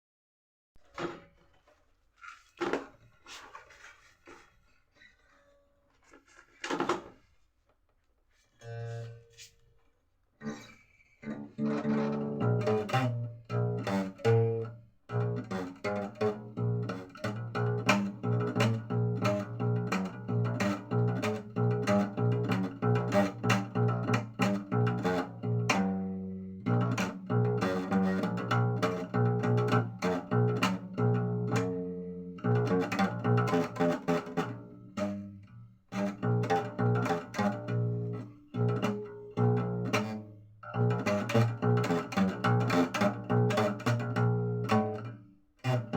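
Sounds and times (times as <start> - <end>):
plucked string instrument: 8.6 - 9.7, 10.4 - 45.9.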